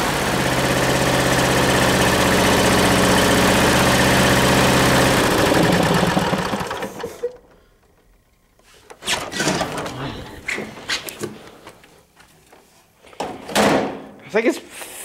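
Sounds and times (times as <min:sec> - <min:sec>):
lawn tractor engine running: 0:00.0 - 0:08.0.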